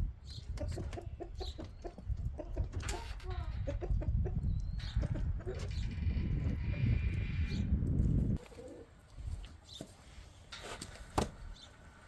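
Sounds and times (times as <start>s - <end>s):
chickens clucking: 0.2s - 7.6s, 8.4s - 9.1s.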